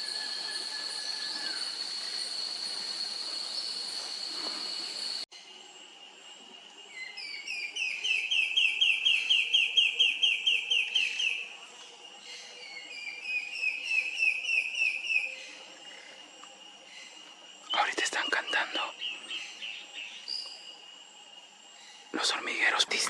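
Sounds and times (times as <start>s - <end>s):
birds singing whistled notes: 6.9s - 11.5s, 12.2s - 15.6s, 16.9s - 20.8s.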